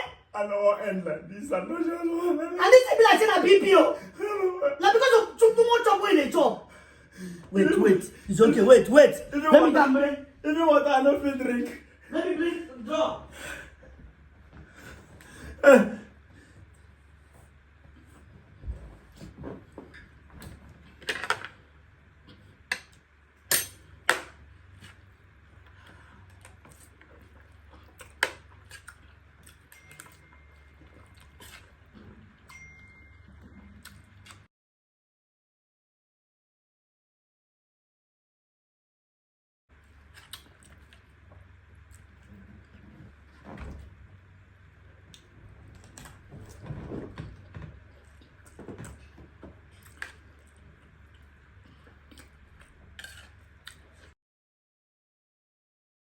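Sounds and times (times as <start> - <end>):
low steady hum: 0.0 - 34.5, 39.7 - 54.2
cutlery clinking on a plate: 22.7 - 24.3
chewing: 24.7 - 32.6, 33.2 - 34.5, 40.0 - 43.2, 47.4 - 54.1.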